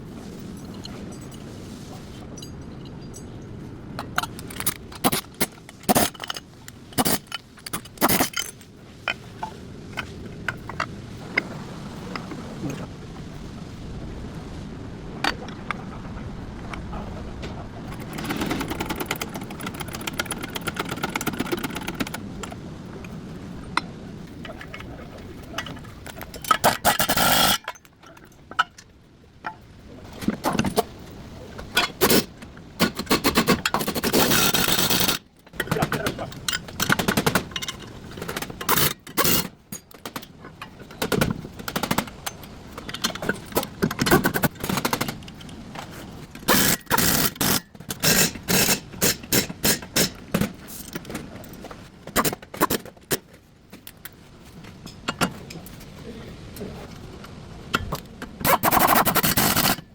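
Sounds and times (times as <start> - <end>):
metal tools clattering and scraping: 0.4 - 10.9.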